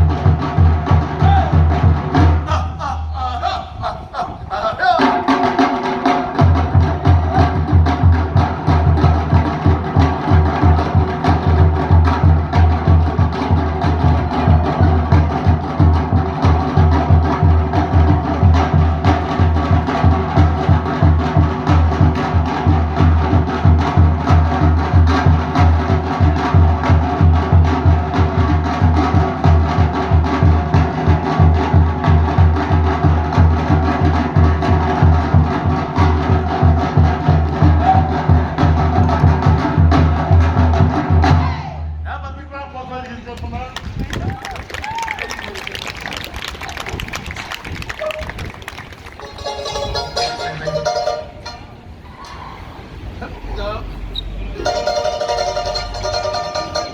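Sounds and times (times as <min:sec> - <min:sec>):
deep bass drum: 0:06.3 - 0:41.6
slit log drums clattering: 0:47.8 - 0:51.8, 0:54.6 - 0:56.9.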